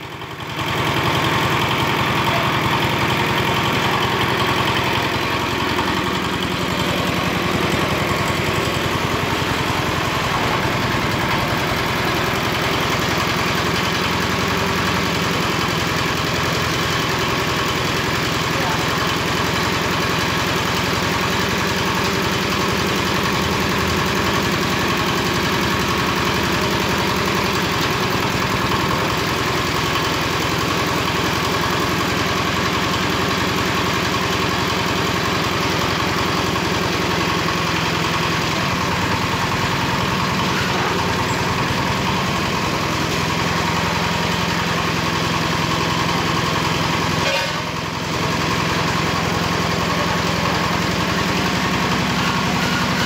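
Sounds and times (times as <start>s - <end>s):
construction hoist engine running: 0.0s - 53.0s.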